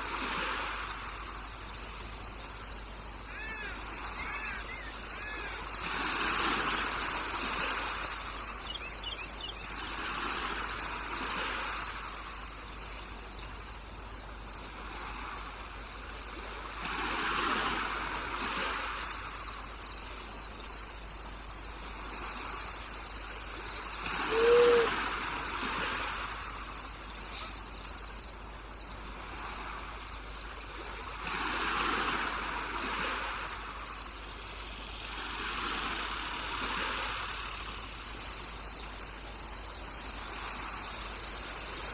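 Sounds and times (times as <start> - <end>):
cricket chirping: 0.0 - 41.9
insect chorus buzzing: 0.0 - 41.9
short low call: 24.2 - 25.0.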